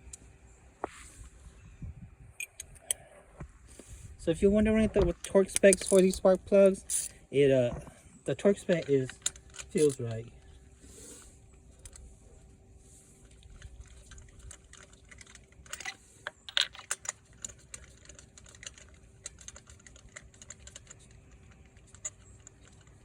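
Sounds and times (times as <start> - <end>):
hand tools clicking and clinking: 5.2 - 7.2, 8.4 - 10.2, 13.2 - 23.0.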